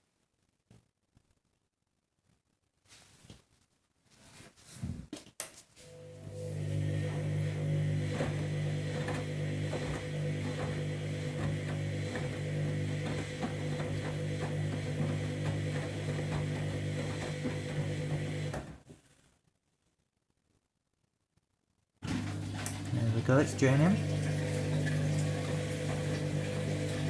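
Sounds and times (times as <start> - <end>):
washing machine humming: 5.8 - 18.8, 22.0 - 27.0.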